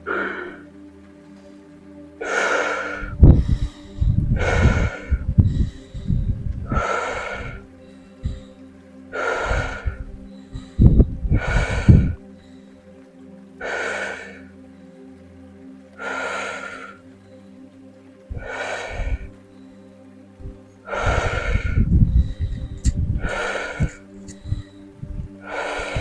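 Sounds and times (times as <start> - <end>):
soft music with held tones: 0.0 - 26.0
woman breathing forcefully: 2.2 - 12.7, 13.6 - 14.4, 16.0 - 17.0, 18.3 - 26.0.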